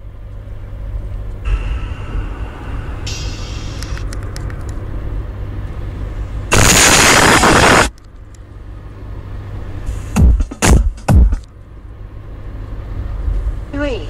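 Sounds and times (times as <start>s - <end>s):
loud distorted blast: 1.5s - 4.0s, 6.5s - 7.9s
subwoofer pumping deep bass: 10.0s - 11.4s.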